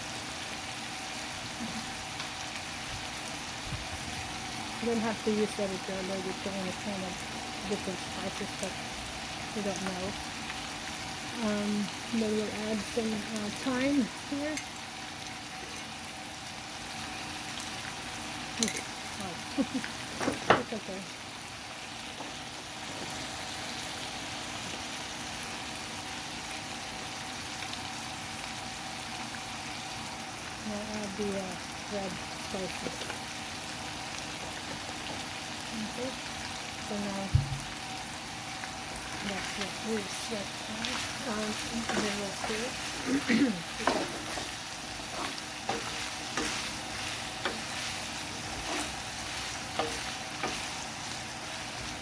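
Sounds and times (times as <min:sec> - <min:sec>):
food sizzling in a pan: 0:00.0 - 0:52.0
utensil clicking against pan: 0:49.7 - 0:50.8.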